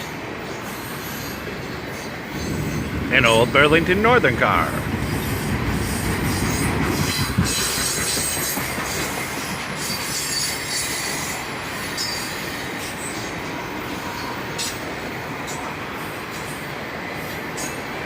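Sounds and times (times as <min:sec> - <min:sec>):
freight train wheels rumbling: 0:00.0 - 0:18.0
wheels squealing: 0:05.0 - 0:14.8.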